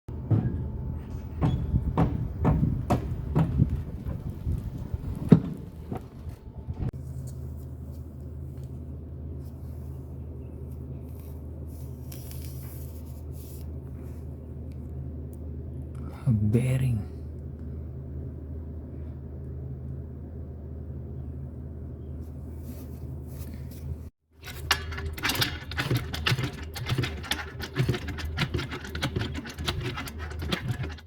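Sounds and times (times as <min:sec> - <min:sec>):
golf cart low rumble: 0:00.1 - 0:07.0
steady low hum: 0:00.1 - 0:31.0
rhythmic wheel clunking: 0:24.4 - 0:31.0.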